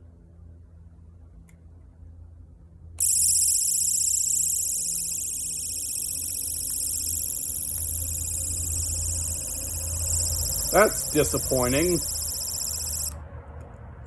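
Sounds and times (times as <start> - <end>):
shrill pulsing alarm tone: 3.0 - 13.2.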